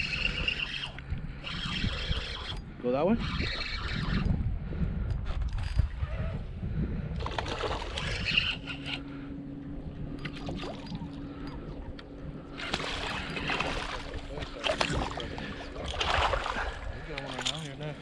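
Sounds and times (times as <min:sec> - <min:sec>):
boat motor humming: 0:00.0 - 0:18.0
low rumble: 0:04.2 - 0:18.0
water sloshing: 0:07.2 - 0:18.0.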